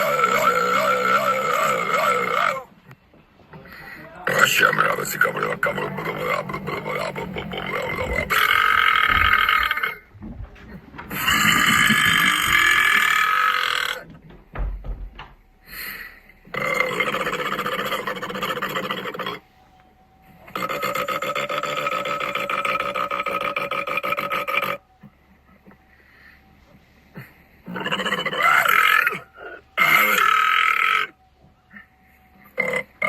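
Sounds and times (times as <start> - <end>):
person belching: 0.0 - 2.7, 4.3 - 10.0, 11.1 - 14.1, 16.5 - 19.4, 20.5 - 24.8, 32.6 - 33.0.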